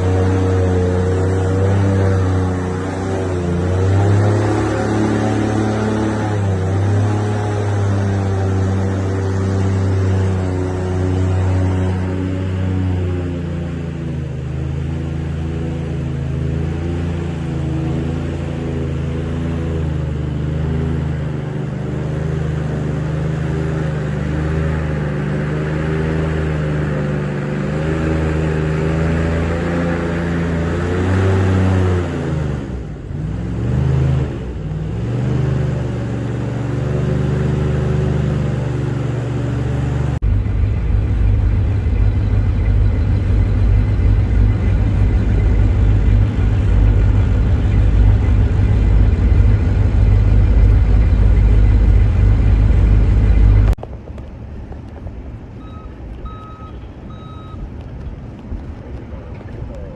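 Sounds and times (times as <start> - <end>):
vehicle engine running: 0.0 - 59.9
deep rumble: 38.6 - 59.9.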